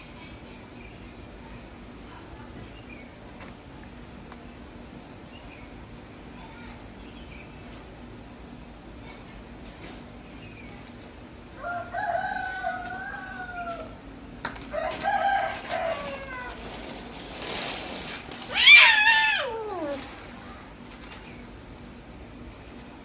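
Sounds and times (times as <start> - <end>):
cat hissing: 18.4 - 20.2
cat yowling: 18.5 - 20.2.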